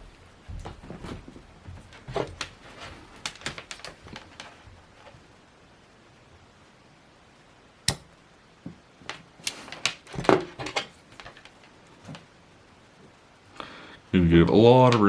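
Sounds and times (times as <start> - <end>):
small clicks and rustles of wire: 0.6 - 5.4, 7.9 - 12.4
pliers sharp click: 7.9 - 8.1.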